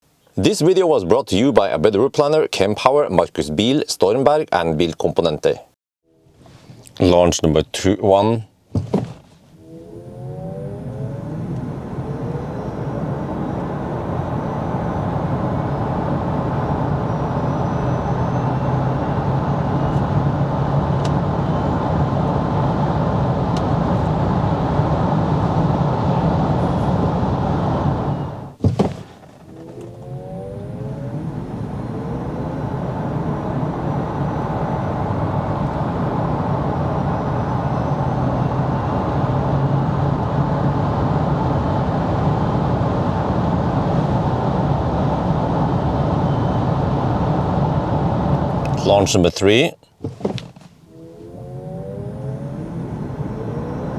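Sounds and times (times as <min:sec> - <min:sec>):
electric motor whine: 0:09.5 - 0:28.6, 0:29.2 - 0:48.8, 0:50.8 - 0:53.9
tyre and road noise: 0:28.5 - 0:36.1.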